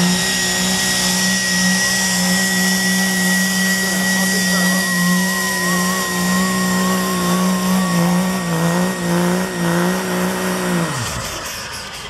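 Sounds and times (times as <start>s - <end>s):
diesel engine drone: 0.0s - 12.0s
high turbo whistle: 0.0s - 12.0s.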